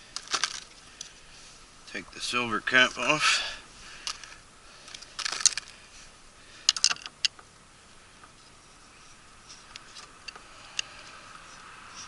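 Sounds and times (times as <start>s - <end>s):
small metal clicks and taps: 6.7s - 7.4s.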